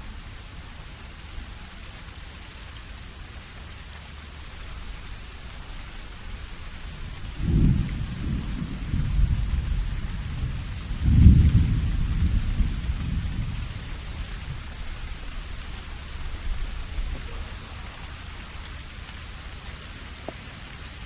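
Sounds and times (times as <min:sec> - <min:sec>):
steady rain: 0:00.0 - 0:21.0
thunder rolling: 0:07.0 - 0:18.9.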